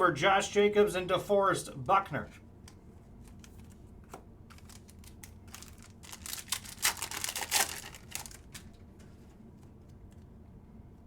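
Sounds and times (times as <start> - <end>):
cards being handled: 3.2 - 10.3
card pack wrapper crinkling and tearing: 4.5 - 8.7.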